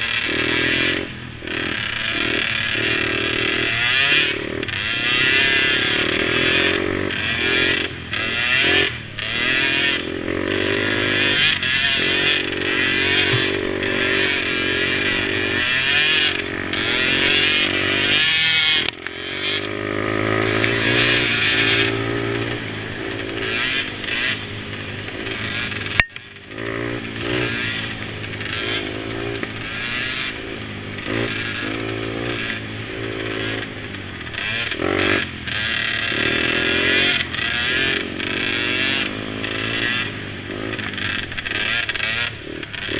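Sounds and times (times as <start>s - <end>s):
small quad engines revving: 0.0s - 42.9s
sharp click: 26.0s - 26.2s.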